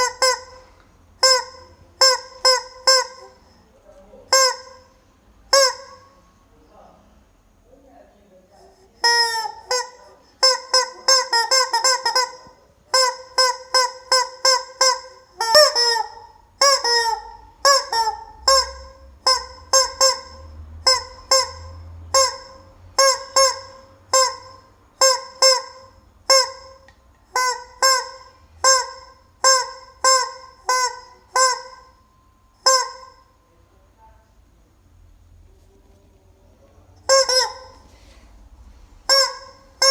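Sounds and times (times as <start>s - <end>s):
rubber chicken toy squawking: 0.0s - 3.6s, 4.3s - 6.2s, 9.0s - 32.0s, 32.6s - 33.3s, 37.0s - 37.9s, 39.0s - 39.9s.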